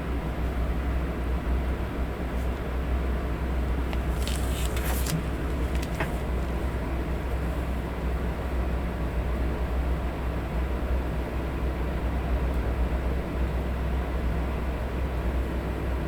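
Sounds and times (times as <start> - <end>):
faint rustles: 3.9 - 6.7.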